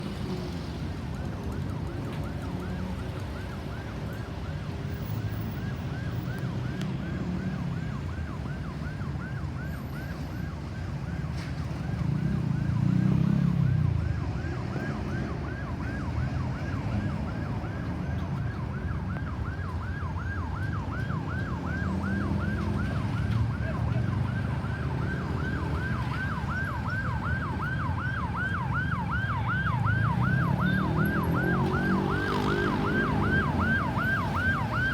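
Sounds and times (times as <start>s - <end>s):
road traffic rumble: 0.0s - 34.9s
ambulance siren yelp: 0.1s - 34.9s.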